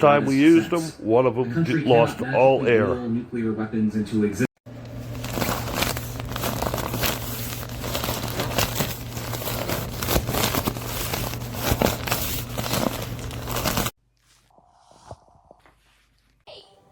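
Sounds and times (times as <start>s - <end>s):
nylon fabric crinkling: 4.9s - 14.0s.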